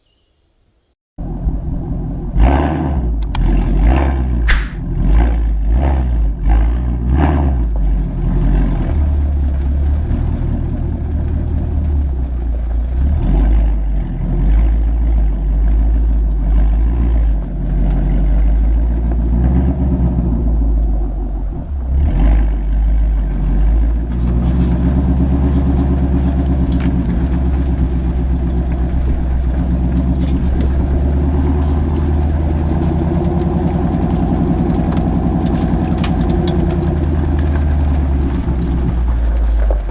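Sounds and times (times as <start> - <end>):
car exhaust revving: 12.9 - 39.9.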